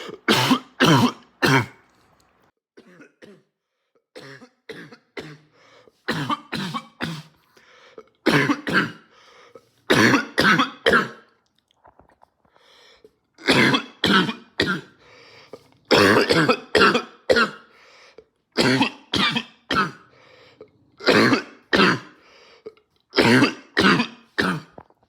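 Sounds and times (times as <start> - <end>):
man barking cough: 0.0 - 1.7, 8.3 - 9.0, 9.9 - 11.2, 15.9 - 17.6, 18.6 - 20.0, 21.0 - 22.2, 23.2 - 24.8.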